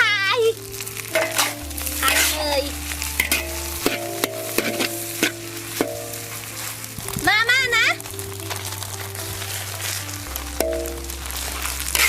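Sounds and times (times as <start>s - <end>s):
sausages sizzling in oil: 0.0s - 12.0s
utensil stirring in a pan: 0.4s - 12.0s.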